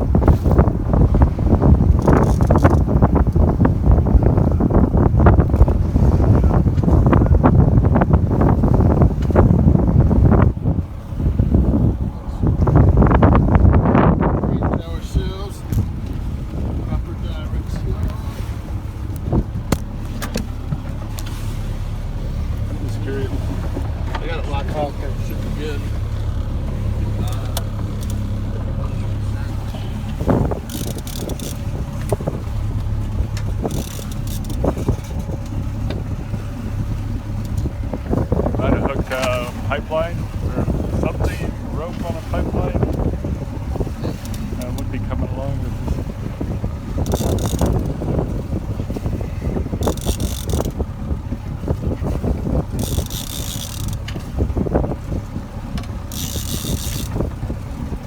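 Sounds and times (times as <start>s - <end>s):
boat engine humming: 0.0s - 58.0s
wind noise on microphone: 0.0s - 58.0s
fishing reel ratcheting clicks: 30.7s - 31.6s, 47.0s - 47.8s, 49.8s - 50.7s, 52.8s - 54.0s, 56.1s - 57.2s.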